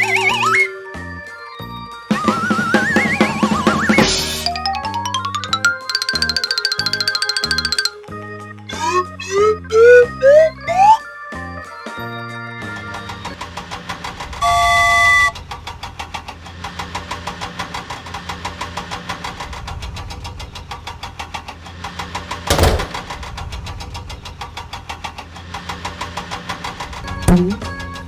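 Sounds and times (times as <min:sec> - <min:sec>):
cartoon toy engine chugging: 0:03.2 - 0:08.0
horn honk: 0:14.4 - 0:15.3.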